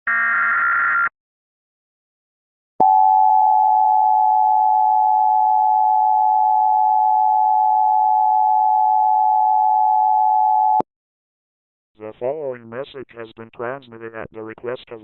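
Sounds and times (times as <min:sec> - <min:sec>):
two-tone alarm: 0:00.1 - 0:01.1.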